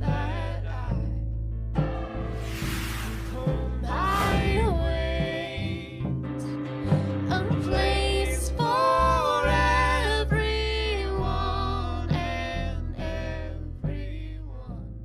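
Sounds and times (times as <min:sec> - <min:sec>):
wordless sung vocal: 0:00.0 - 0:01.2, 0:03.1 - 0:14.9
folk-rock song: 0:03.3 - 0:14.3.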